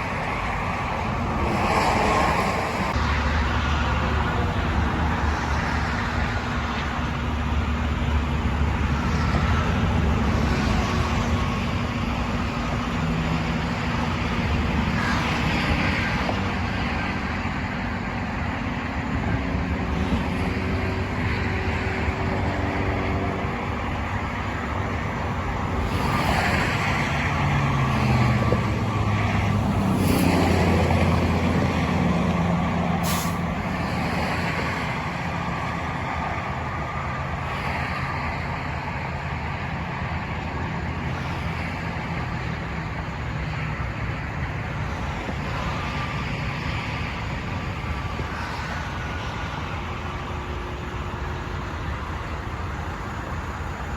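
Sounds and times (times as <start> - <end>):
heavy truck engine running: 0.0 - 53.9
road traffic noise: 0.0 - 53.9
sharp hiss: 33.0 - 33.5.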